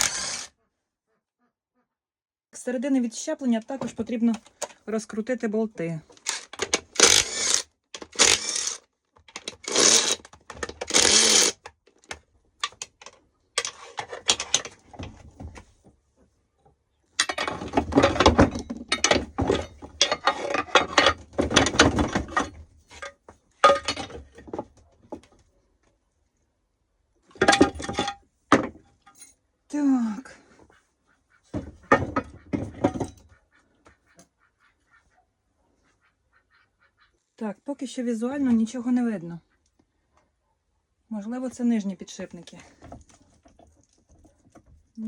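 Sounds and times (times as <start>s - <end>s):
ratchet wrench clicking: 6.3s - 8.8s, 9.5s - 10.2s, 10.9s - 11.6s
metal tools clinking: 17.2s - 24.2s, 29.0s - 29.4s.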